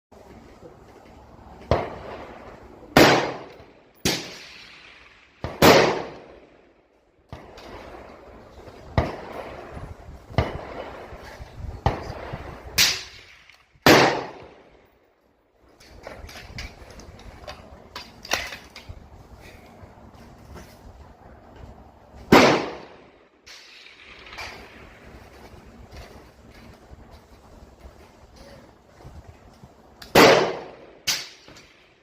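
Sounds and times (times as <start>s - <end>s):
rifle shots echoing: 1.7s - 6.6s, 11.8s - 14.7s, 22.3s - 25.0s, 30.1s - 31.9s.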